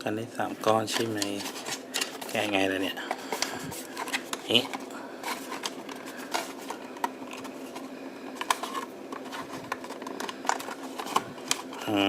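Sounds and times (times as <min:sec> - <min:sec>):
hands handling plastic packaging: 0:00.5 - 0:12.0.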